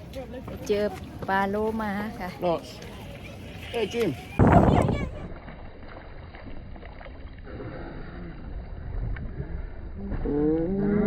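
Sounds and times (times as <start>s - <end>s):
boat rumbling at sea: 0.0s - 11.0s
wind noise: 4.1s - 5.6s.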